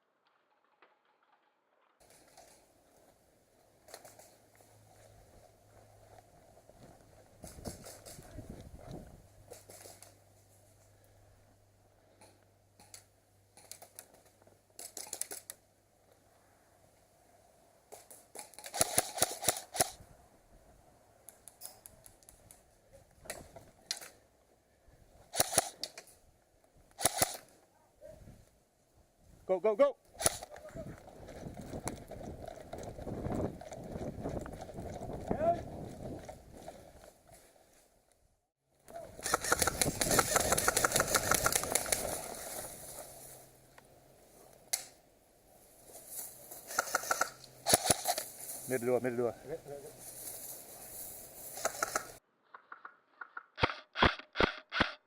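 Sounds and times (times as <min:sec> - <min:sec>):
airsoft guns firing: 0:18.6 - 0:20.0, 0:25.3 - 0:25.9, 0:27.0 - 0:27.5, 0:39.2 - 0:42.2, 0:46.7 - 0:48.2, 0:51.5 - 0:52.2.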